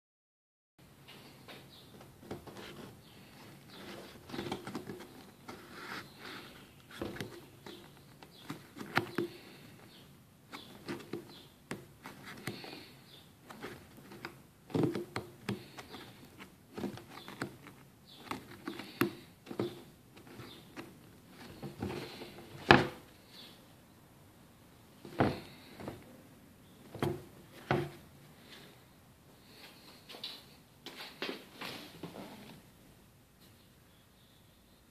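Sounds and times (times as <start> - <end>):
hands rustling: 1.8 - 23.6.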